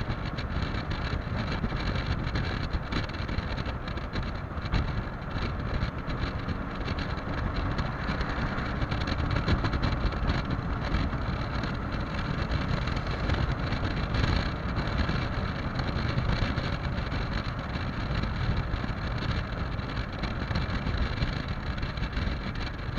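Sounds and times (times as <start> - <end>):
road noise: 0.0 - 22.9
scooter engine: 0.0 - 22.9
wind buffeting microphone: 0.0 - 22.9.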